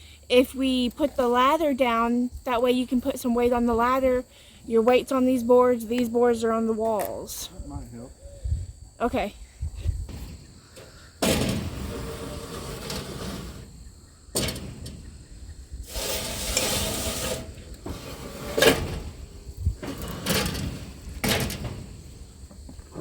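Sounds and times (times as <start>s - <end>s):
roofing materials knocking and scraping: 10.0s - 23.0s
long sliding scrape: 10.7s - 13.9s, 15.8s - 21.9s.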